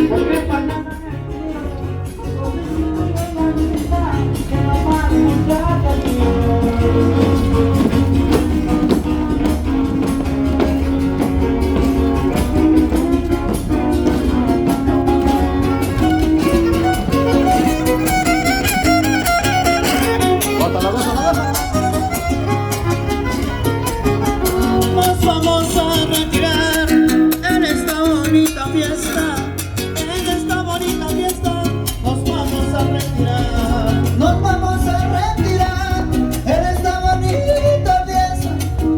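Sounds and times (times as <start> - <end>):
strummed guitars: 0.0 - 38.9
violin melody: 5.5 - 26.2.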